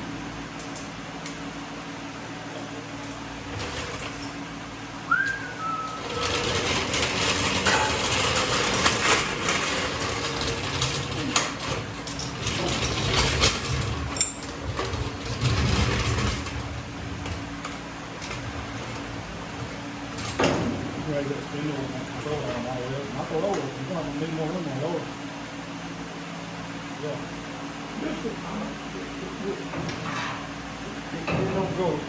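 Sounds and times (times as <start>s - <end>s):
short squeak: 5.1s - 6.4s.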